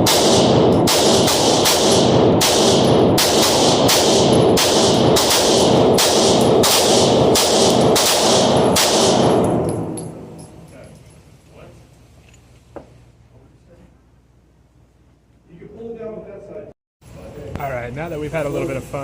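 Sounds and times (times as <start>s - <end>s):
pistol shots: 0.0s - 10.4s.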